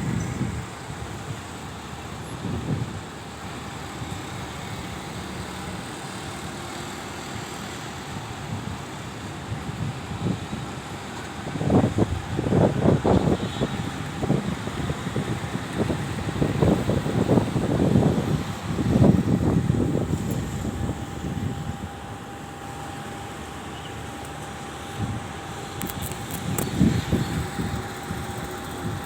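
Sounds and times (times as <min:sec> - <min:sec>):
wind buffeting microphone: 0:00.0 - 0:03.1, 0:08.3 - 0:22.3, 0:24.8 - 0:29.0
distant traffic rumble: 0:10.6 - 0:29.0.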